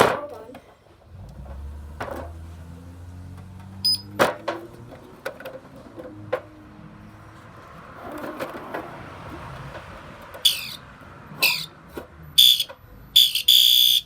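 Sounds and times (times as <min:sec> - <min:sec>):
fire alarm horn blasts: 0:12.4 - 0:14.0.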